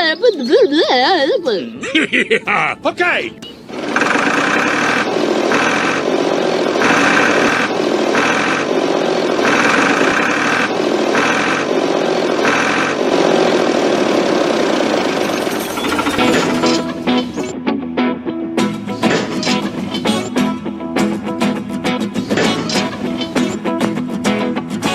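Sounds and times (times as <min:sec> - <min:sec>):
engine running: 0:03.1 - 0:17.6, 0:18.6 - 0:24.9
harsh pulsing engine layer: 0:03.6 - 0:17.5, 0:22.2 - 0:23.9.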